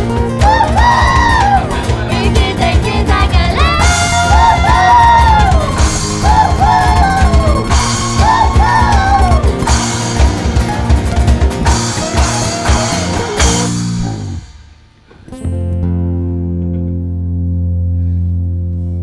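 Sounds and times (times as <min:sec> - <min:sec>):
pop-rock band playing: 0:00.0 - 0:17.3
person singing: 0:00.4 - 0:11.0.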